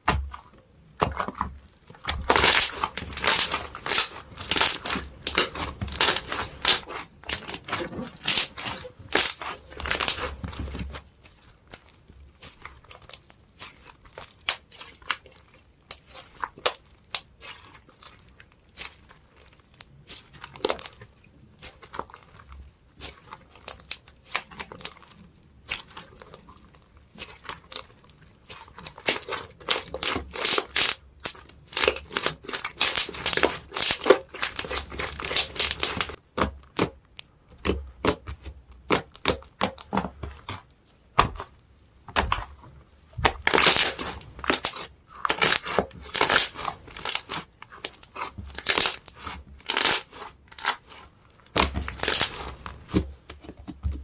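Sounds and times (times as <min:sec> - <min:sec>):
sticky slime crackling and clicking: 0:01.0 - 0:15.3, 0:28.6 - 0:41.5, 0:43.2 - 0:53.5.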